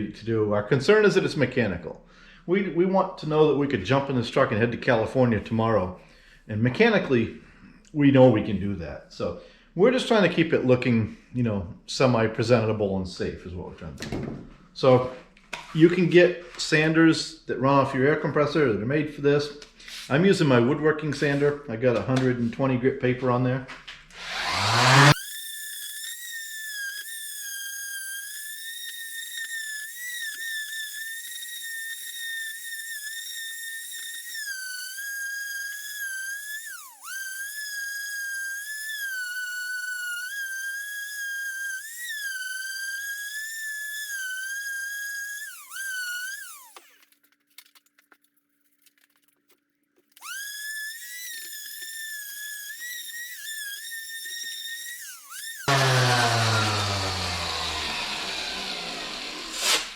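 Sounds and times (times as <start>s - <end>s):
electric sander whining: 24.2s - 47.0s, 50.1s - 59.9s.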